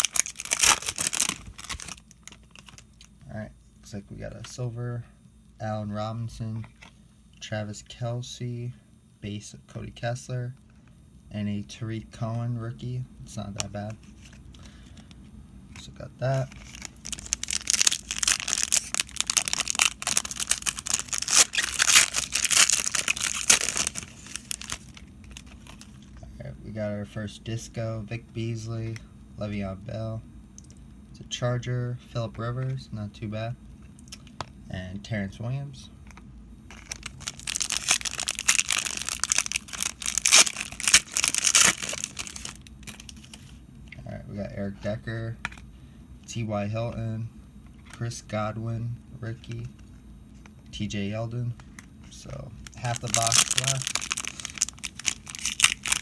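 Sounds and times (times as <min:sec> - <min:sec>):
plastic wrapper tearing and crinkling: 0:00.0 - 0:03.1, 0:16.4 - 0:26.1, 0:36.7 - 0:43.6, 0:52.6 - 0:56.0.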